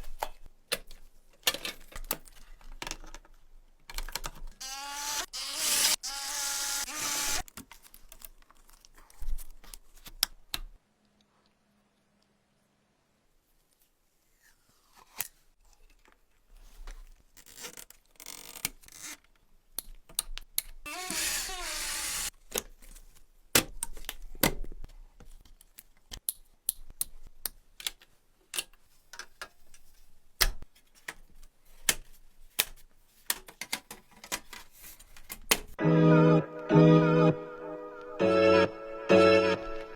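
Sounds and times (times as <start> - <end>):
crinkling tearing noise: 5.2 - 10.2.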